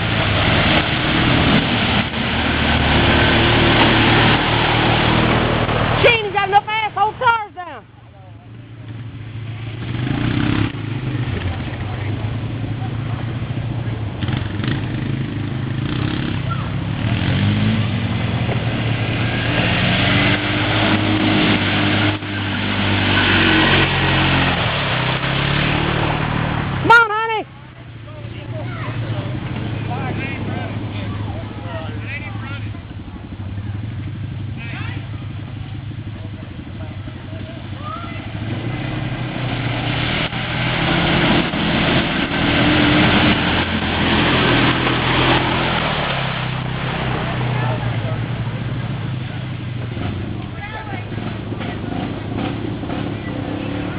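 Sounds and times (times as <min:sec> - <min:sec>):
rushing noise: 0:00.0 - 0:07.1, 0:17.1 - 0:27.0, 0:38.1 - 0:51.4
atv engine running under load: 0:08.0 - 0:53.9.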